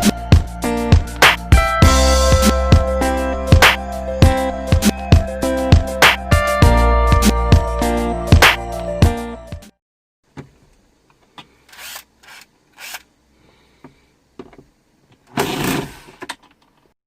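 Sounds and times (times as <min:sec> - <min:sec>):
music: 0:00.0 - 0:09.8.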